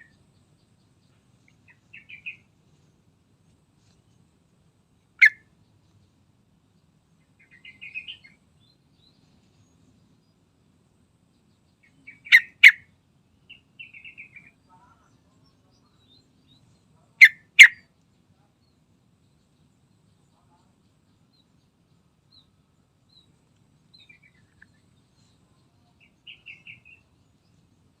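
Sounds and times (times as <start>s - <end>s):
bulbul soft twittering: 1.3s - 2.5s
bulbul loud calls: 5.2s - 5.5s, 12.1s - 12.9s, 17.1s - 17.9s.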